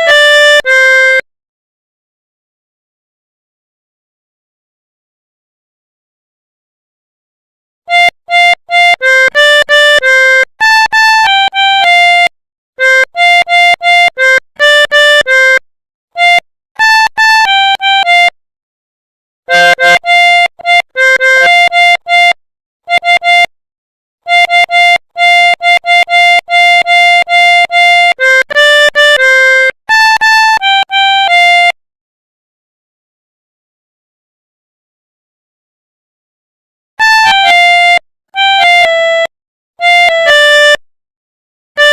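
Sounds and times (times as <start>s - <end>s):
melodica playing a melody: 0.0s - 1.2s, 7.9s - 15.6s, 16.2s - 18.4s, 19.5s - 23.5s, 24.2s - 31.8s, 37.0s - 40.8s.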